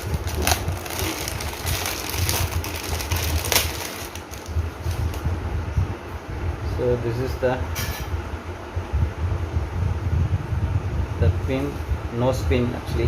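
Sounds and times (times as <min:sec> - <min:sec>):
packaging crinkling and rustling: 0:00.0 - 0:05.2
low rumble of handling noise: 0:00.0 - 0:13.0.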